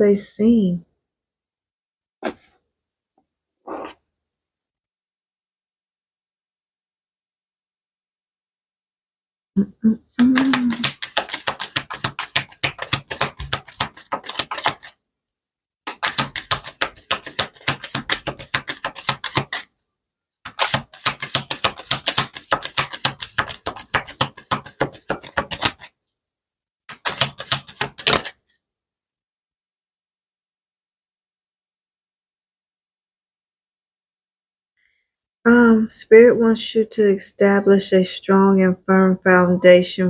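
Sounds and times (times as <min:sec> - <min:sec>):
cards being shuffled: 0:10.2 - 0:15.0, 0:15.9 - 0:19.7, 0:20.5 - 0:25.9, 0:26.9 - 0:28.4.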